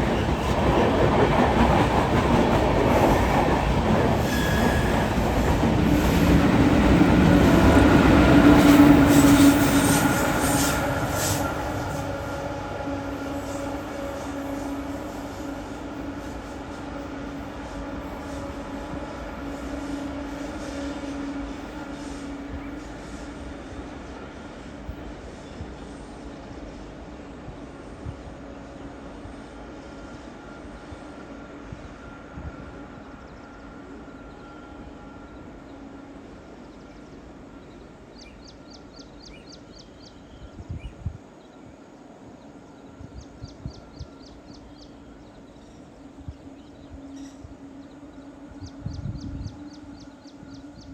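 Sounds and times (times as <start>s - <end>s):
locomotive hum: 0.0s - 39.2s.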